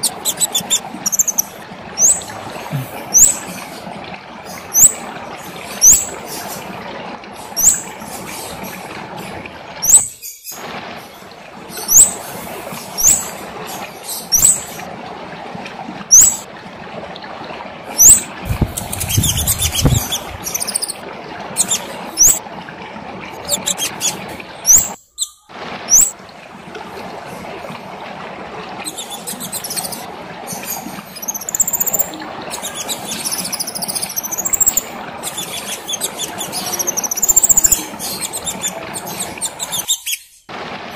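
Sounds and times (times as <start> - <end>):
high bird twittering: 0.0 - 2.3, 3.1 - 3.4, 4.7 - 5.0, 5.8 - 6.1, 7.6 - 7.8, 9.8 - 10.5, 11.9 - 12.2, 13.0 - 13.3, 14.3 - 14.7, 16.1 - 16.4, 18.0 - 21.0, 21.6 - 22.4, 23.4 - 26.1, 28.9 - 30.0, 31.1 - 40.3.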